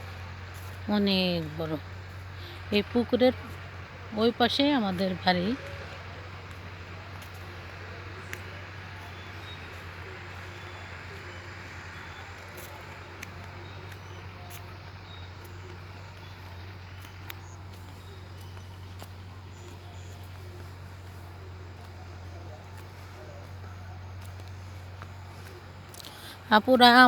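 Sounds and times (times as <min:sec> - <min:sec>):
distant engine humming: 0:00.0 - 0:27.0
faint clicks: 0:05.6 - 0:23.6.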